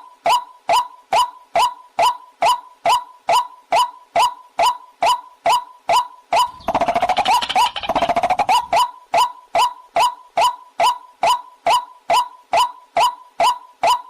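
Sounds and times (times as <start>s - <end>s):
waterhen call: 6.4s - 8.9s
rapid bird chattering: 6.5s - 8.8s.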